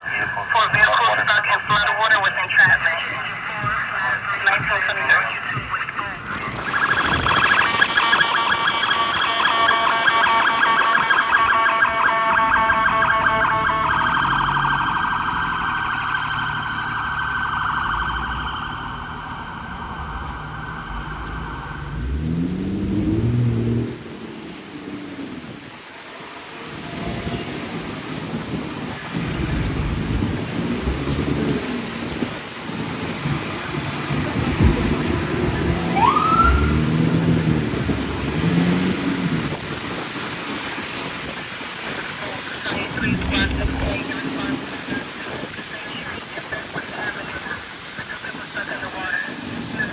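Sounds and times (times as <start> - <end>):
engine rumble: 0.0 - 49.9
heavy rain: 0.0 - 49.9
road noise: 0.0 - 49.9
siren tone rising in pitch: 6.2 - 24.1, 34.1 - 39.4, 42.8 - 44.4
electronic siren fast warble: 6.3 - 23.8, 35.6 - 38.7.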